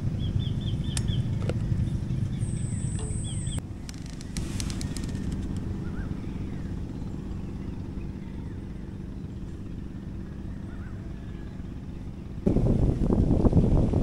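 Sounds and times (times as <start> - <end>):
low engine hum: 0.0 - 14.0
faint bird chirps: 1.9 - 3.6.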